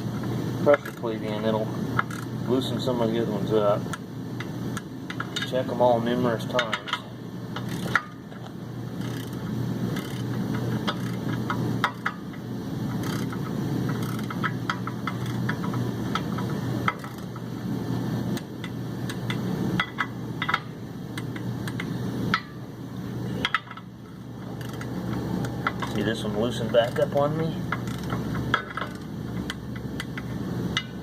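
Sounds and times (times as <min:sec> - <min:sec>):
steady low hum: 0:00.0 - 0:31.0
wrench clicking: 0:02.0 - 0:02.3, 0:07.6 - 0:08.1, 0:09.0 - 0:09.4, 0:10.0 - 0:12.2, 0:12.9 - 0:17.3, 0:24.5 - 0:26.0, 0:26.7 - 0:30.9.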